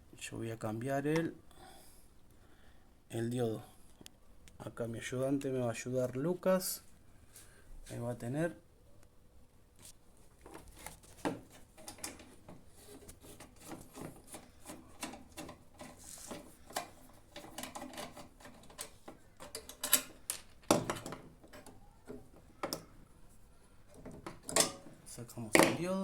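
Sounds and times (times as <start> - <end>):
hand tools clicking on metal: 13.3 - 21.8.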